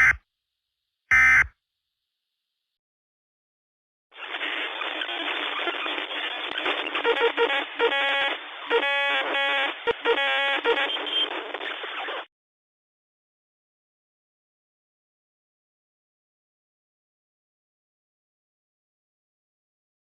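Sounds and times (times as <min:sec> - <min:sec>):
narrow-band radio static: 0:04.2 - 0:12.3.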